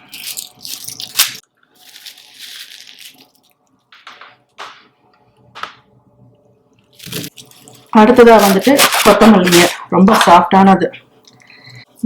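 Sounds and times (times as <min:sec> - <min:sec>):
onion skins rustling and crackling: 0:00.0 - 0:03.6, 0:06.9 - 0:09.8.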